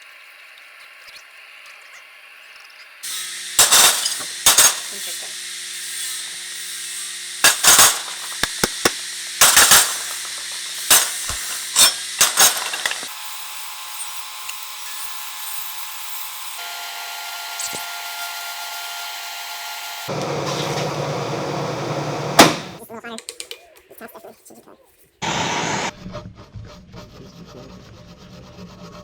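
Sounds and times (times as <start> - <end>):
steady hum with held tones: 3.0 - 14.5
hand tool rasping strokes: 3.0 - 16.6.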